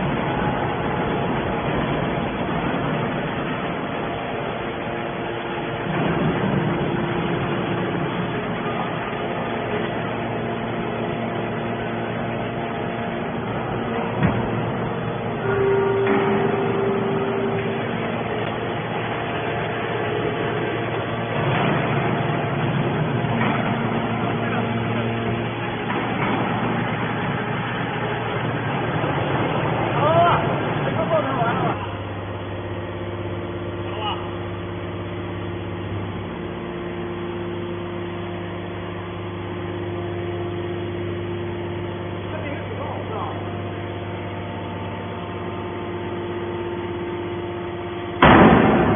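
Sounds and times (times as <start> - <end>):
hydraulic baler running: 0.0 - 48.9
held tone: 15.3 - 18.7.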